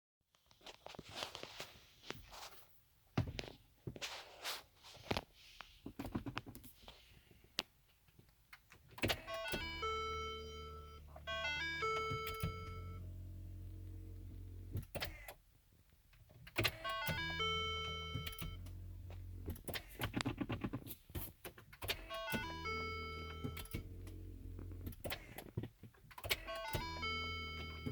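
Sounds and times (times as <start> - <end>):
car interior warning chime: 9.0 - 14.7, 16.7 - 19.6, 22.0 - 24.8, 26.3 - 27.9
low steady hum: 9.2 - 14.9, 16.9 - 19.7, 22.1 - 25.1.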